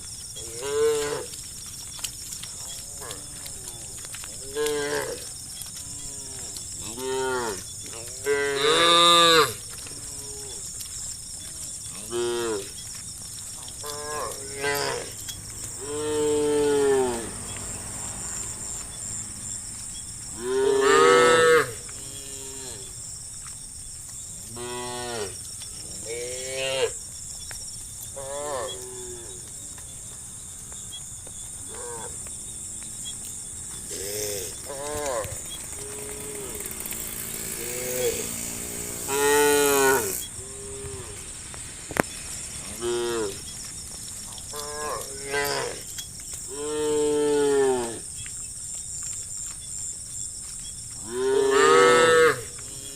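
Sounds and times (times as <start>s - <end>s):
cattle mooing: 4.4s - 10.6s, 13.8s - 18.8s, 20.4s - 22.9s, 33.8s - 41.2s, 42.6s - 43.4s, 44.5s - 45.9s, 51.0s - 52.9s.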